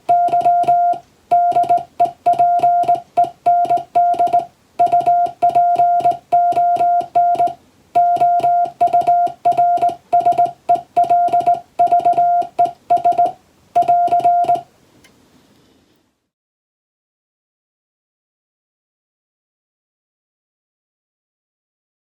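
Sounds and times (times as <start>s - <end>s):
morse code tone: 0.0s - 14.7s.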